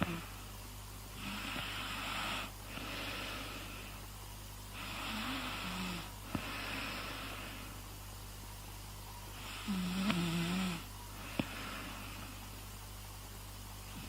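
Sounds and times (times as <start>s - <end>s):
steady low hum: 0.0s - 14.0s
rasping snoring breaths: 1.2s - 4.0s, 4.7s - 7.8s, 9.4s - 12.4s.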